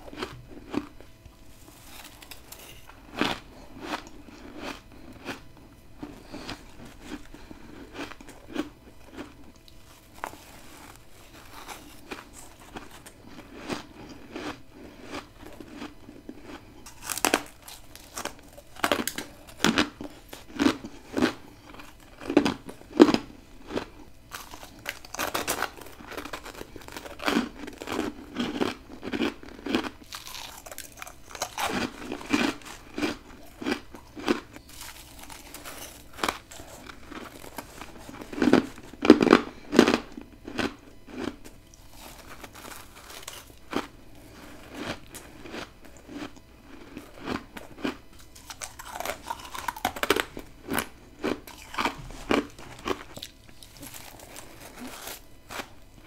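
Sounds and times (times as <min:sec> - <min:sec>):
biting crunchy frost ice: 0:01.6 - 0:09.4, 0:10.1 - 0:55.8.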